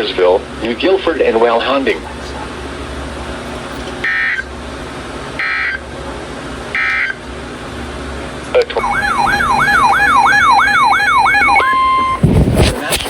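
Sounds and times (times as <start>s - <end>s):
digital data tone bursts: 8.8s - 12.2s
low hum: 8.8s - 12.6s.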